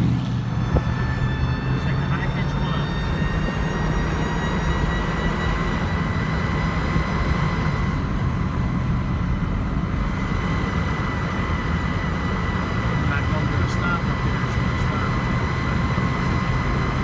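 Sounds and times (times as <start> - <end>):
engine and road rumble: 0.0 - 17.0
high-pitched drive whine: 0.0 - 17.0.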